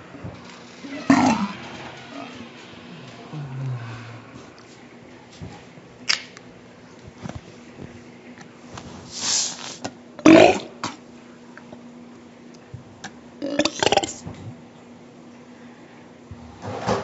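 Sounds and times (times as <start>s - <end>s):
breathy rush of air: 1.3s - 5.0s
child burping: 13.4s - 14.2s.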